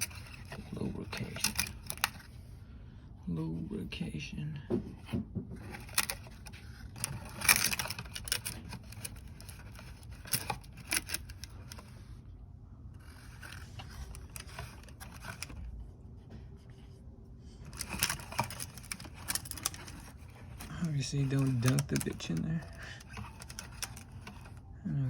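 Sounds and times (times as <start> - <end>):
light clicks taps and scrapes: 17.6 - 24.6.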